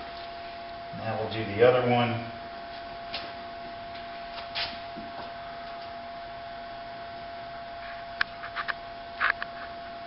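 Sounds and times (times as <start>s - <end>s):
electrical hum with thin tone: 0.0s - 10.0s.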